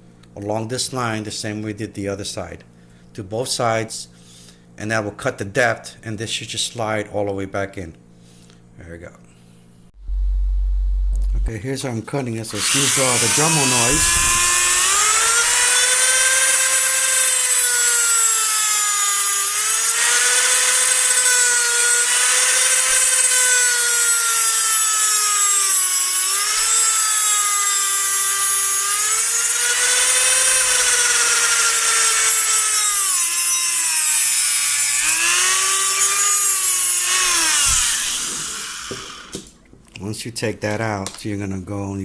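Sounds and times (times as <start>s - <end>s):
rotary tool cutting metal: 12.5s - 39.5s.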